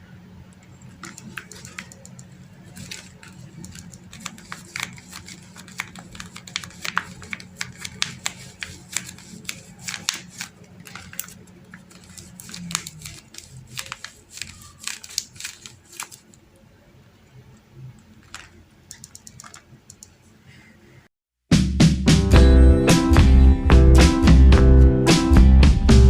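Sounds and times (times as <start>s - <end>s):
paper crinkling: 0.7s - 16.4s, 18.1s - 18.6s.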